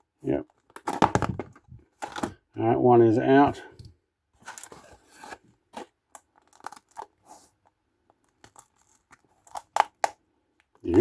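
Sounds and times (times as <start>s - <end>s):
plastic packaging clicks and crinkles: 4.4s - 11.0s.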